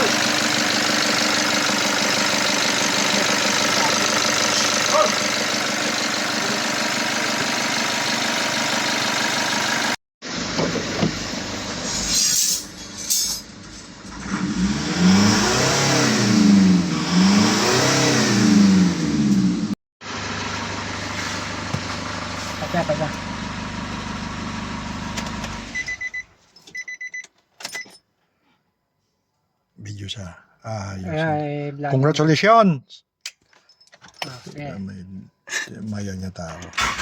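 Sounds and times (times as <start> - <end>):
diesel engine running and revving: 0.0 - 12.0, 13.5 - 25.9.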